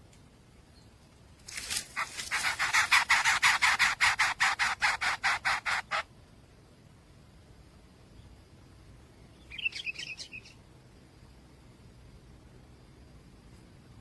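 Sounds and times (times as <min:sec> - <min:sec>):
nestlings begging calls: 0:01.8 - 0:06.1, 0:09.4 - 0:10.6.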